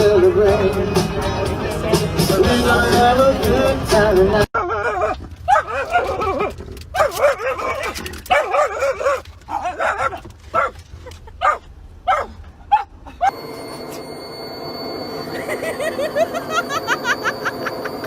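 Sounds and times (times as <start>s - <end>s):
dog whining and yowling: 4.6s - 10.7s
faint steady high tone: 13.3s - 18.0s.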